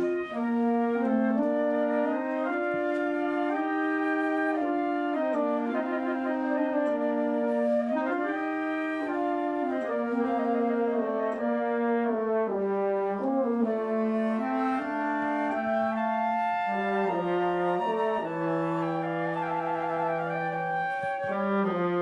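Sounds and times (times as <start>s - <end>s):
brass band playing slow piece: 0.0s - 22.0s
french horn: 0.0s - 22.0s
woodwinds: 0.0s - 22.0s.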